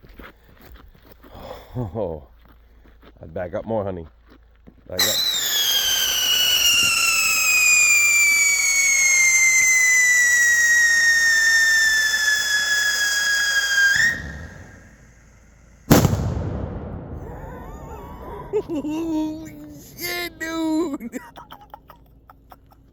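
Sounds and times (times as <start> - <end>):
firework whistle falling in pitch: 5.0 - 15.0
firework bang: 5.0 - 18.9.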